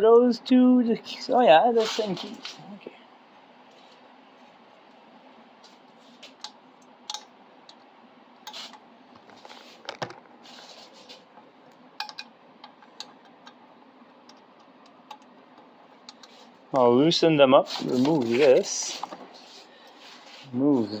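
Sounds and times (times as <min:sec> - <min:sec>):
metal tools clicking and clinking: 0:12.0 - 0:13.6
soft rustle: 0:17.6 - 0:21.0.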